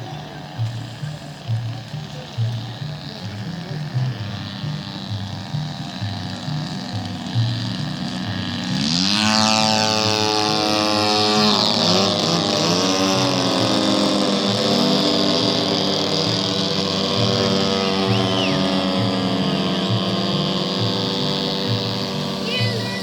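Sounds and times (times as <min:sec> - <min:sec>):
model airplane engine revving: 0:00.0 - 0:23.0.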